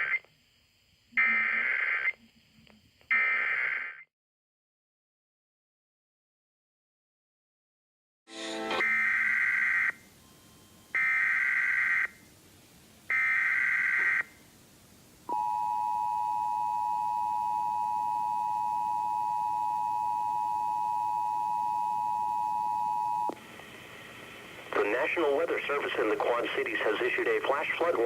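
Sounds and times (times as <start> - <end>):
screechy digital data bursts: 0.0 - 0.3, 1.2 - 2.2, 3.1 - 4.0
two-tone attention signal: 15.3 - 23.4.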